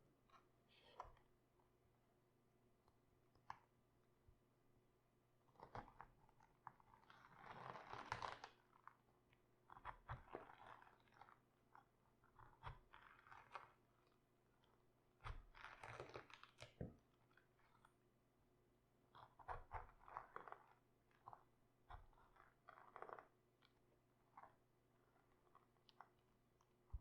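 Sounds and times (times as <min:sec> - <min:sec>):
raw cabbage crunching: 0:15.3 - 0:16.7.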